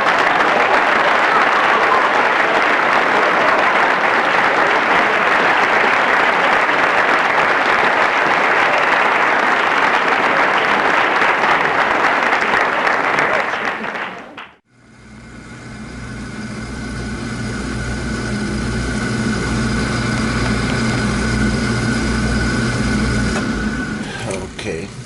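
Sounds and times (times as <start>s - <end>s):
oil burner rough rushing: 14.7s - 25.0s.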